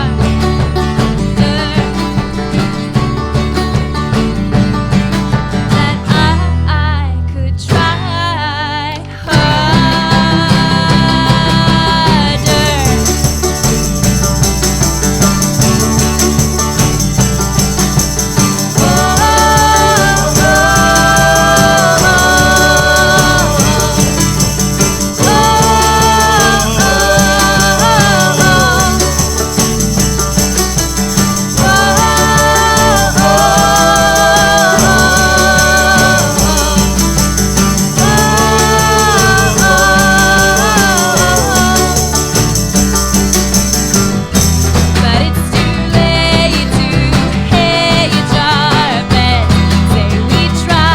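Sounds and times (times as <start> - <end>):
instrumental band playing: 0.0 - 6.4, 9.3 - 50.9
shaker keeping time: 9.5 - 48.2.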